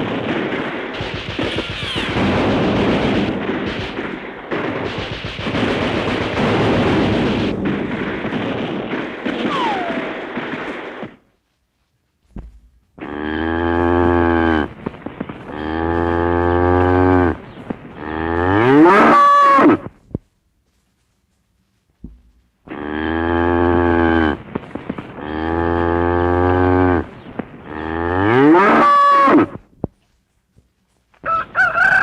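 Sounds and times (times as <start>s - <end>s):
artillery and gunfire: 0.0s - 11.4s, 12.4s - 19.9s, 23.8s - 29.6s
cow mooing: 13.0s - 14.7s, 15.5s - 17.4s, 18.0s - 19.8s, 22.7s - 24.4s, 25.2s - 27.1s, 27.7s - 29.6s.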